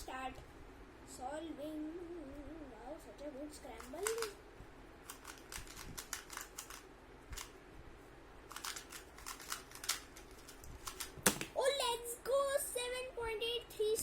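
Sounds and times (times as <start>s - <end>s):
puzzle cube layers clicking: 3.8s - 4.3s, 5.1s - 6.8s, 8.5s - 11.1s.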